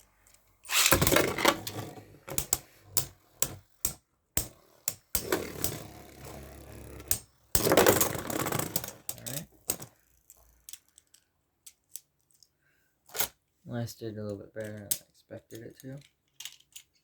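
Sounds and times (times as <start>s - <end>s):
spinning tops clattering: 0.7s - 10.4s.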